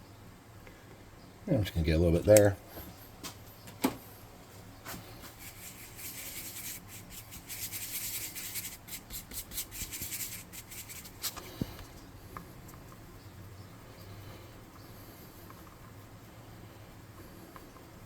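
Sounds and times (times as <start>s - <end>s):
paintbrush scratchy strokes: 5.1s - 18.0s.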